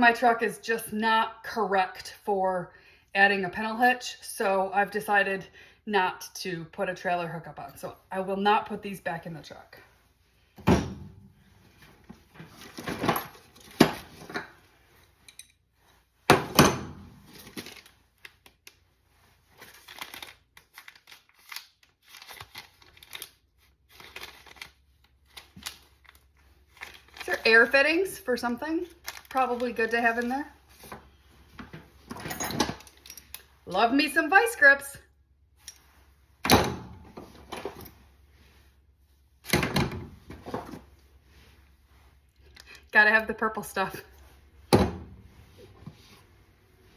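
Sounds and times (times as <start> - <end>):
tools clunking and rustling in bag: 10.6 - 18.0, 29.0 - 33.5, 35.7 - 38.1, 39.4 - 41.0
plastic rustling and clicking: 28.9 - 31.0.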